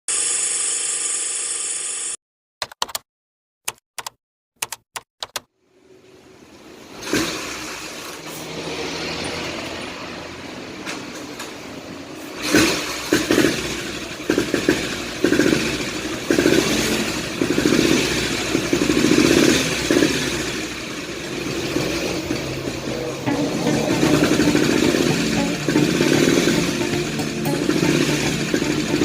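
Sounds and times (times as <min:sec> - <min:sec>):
motorcycle engine revving: 0:05.8 - 0:29.0.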